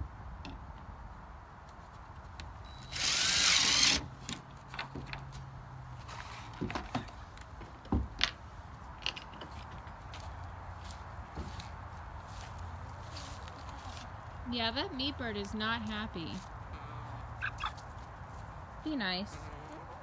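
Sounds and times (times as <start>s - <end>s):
power drill whine: 2.7s - 4.0s.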